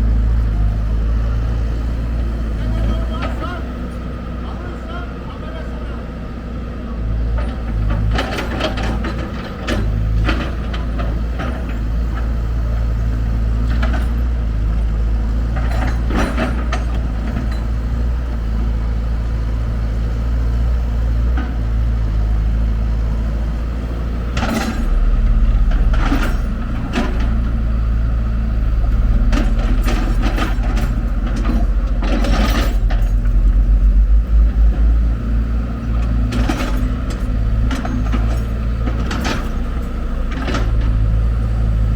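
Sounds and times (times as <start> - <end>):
diesel engine rumbling: 0.0 - 41.9
machine clanks and knocks: 7.3 - 12.5, 13.6 - 17.8, 24.3 - 27.6, 28.9 - 35.0, 35.8 - 41.9.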